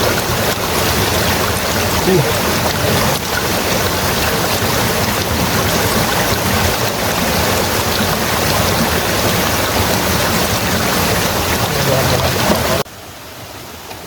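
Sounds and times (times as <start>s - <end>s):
stream flowing: 0.0s - 14.0s.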